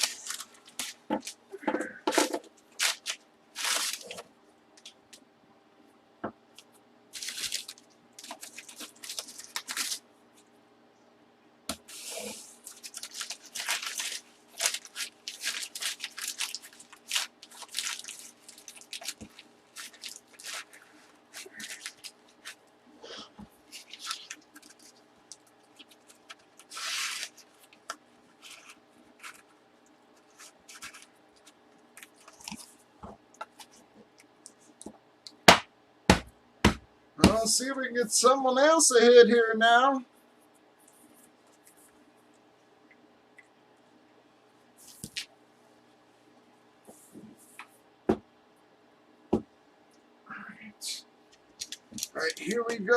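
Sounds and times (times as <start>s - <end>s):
plastic wrapping crinkling and tearing: 0.0s - 1.5s, 2.2s - 4.2s, 7.2s - 10.0s, 11.9s - 22.6s, 23.6s - 29.6s, 30.2s - 32.8s, 51.4s - 52.8s.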